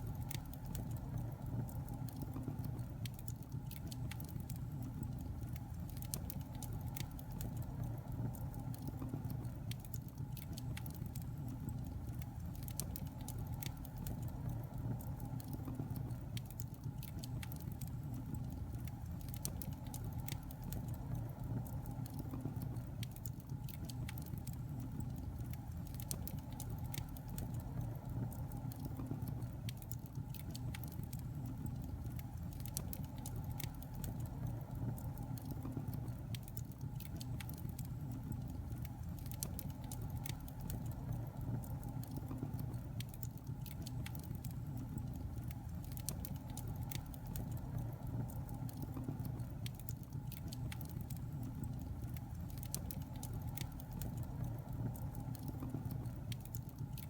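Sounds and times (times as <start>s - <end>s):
fire crackling and popping: 0.0s - 57.0s.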